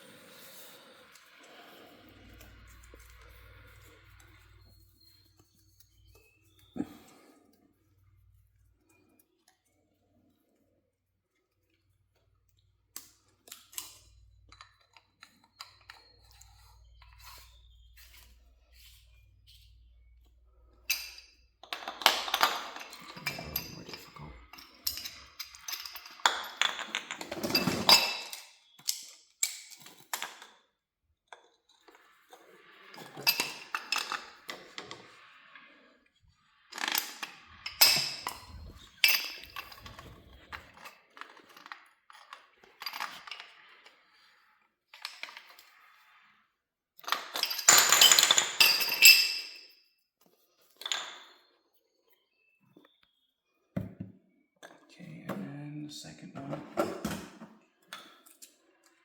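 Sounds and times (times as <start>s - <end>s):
metal tools clinking and rattling: 20.9s - 30.5s, 32.9s - 35.2s, 36.7s - 43.7s, 47.0s - 49.7s.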